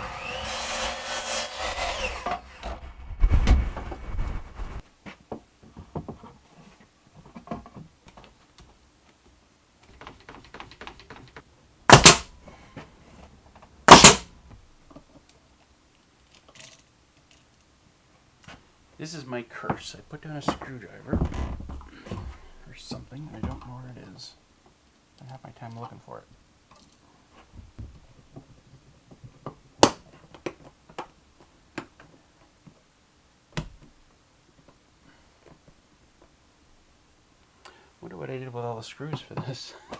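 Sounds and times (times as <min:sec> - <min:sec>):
tools and boards clicking and knocking: 0:09.8 - 0:12.3, 0:13.9 - 0:14.2
loud sharp bangs: 0:11.9 - 0:12.3, 0:13.9 - 0:14.3.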